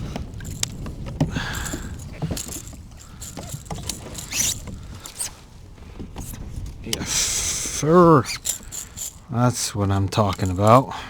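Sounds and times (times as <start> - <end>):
knocks against boat: 0.0 - 5.1
wind rumbling on microphone: 0.0 - 10.9.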